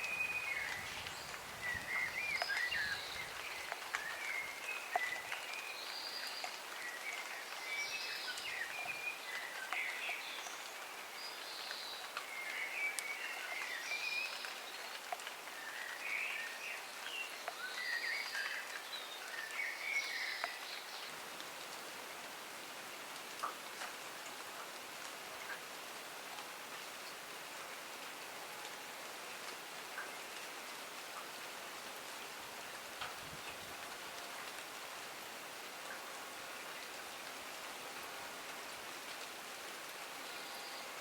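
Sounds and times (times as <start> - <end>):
songbirds singing: 0.0 - 21.2, 40.2 - 41.0
raindrops ticking: 0.0 - 21.9, 23.1 - 27.2, 29.4 - 35.1
light rain hiss: 0.0 - 41.0.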